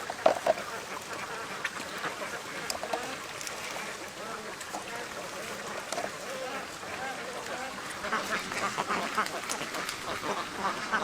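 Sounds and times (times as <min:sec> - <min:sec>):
ducks quacking: 0:00.0 - 0:11.0.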